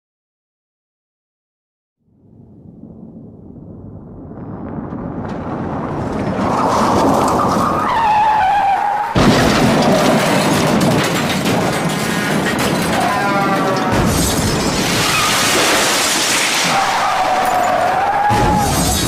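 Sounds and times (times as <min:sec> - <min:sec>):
car crash: 0:02.3 - 0:19.0
debris crunching and clattering: 0:04.4 - 0:08.4, 0:09.0 - 0:19.0
tyres skidding with squeal: 0:06.0 - 0:19.0.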